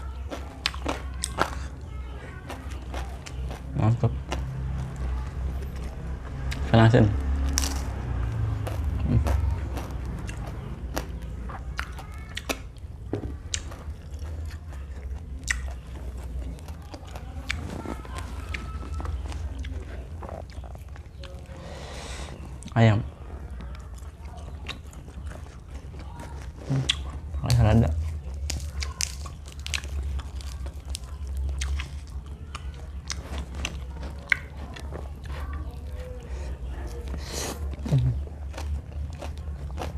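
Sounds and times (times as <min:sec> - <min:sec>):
person chewing crunchy food: 0:00.0 - 0:39.9
wet mouth clicks: 0:26.7 - 0:27.1.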